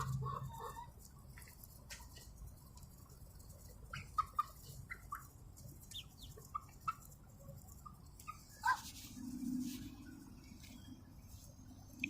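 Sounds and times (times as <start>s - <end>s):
small chickens clucking and chirping: 0.0s - 12.0s.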